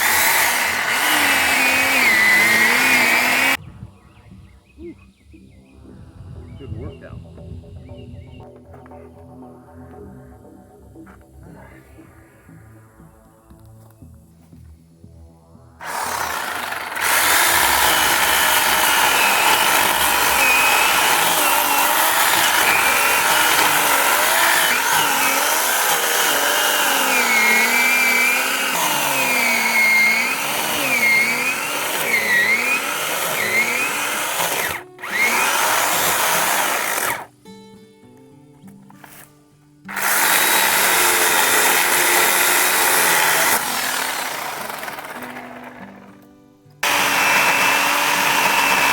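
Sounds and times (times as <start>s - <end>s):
chainsaw cutting wood: 0.0s - 3.6s, 15.8s - 37.3s, 39.9s - 48.9s.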